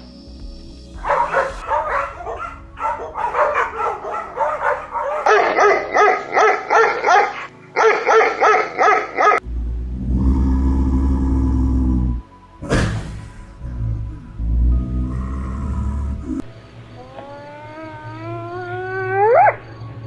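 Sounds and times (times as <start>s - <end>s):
music with deep rumble: 0.0s - 20.0s
dog yipping and barking: 1.0s - 9.4s, 17.0s - 19.6s.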